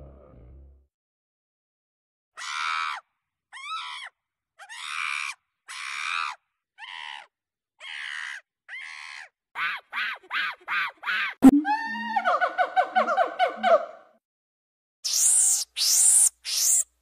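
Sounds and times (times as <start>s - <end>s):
monkey screeching: 2.4s - 13.9s, 15.1s - 16.9s.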